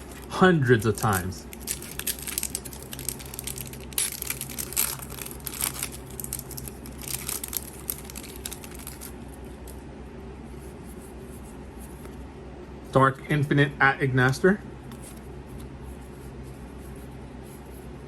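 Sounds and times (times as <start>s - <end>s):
foil wrapper crinkling: 0.0s - 9.7s.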